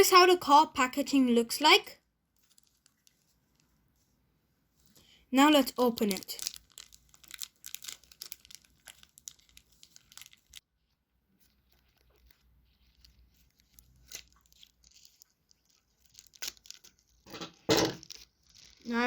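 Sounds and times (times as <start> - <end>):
wrapper tearing and crinkling: 2.4 - 3.6, 5.8 - 10.7, 11.7 - 19.0.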